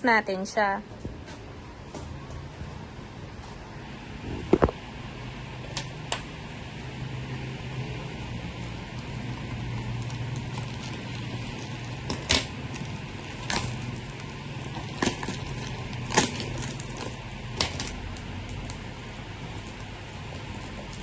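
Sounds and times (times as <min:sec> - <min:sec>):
fan hum: 0:00.0 - 0:21.0
packaging crackling: 0:08.1 - 0:21.0.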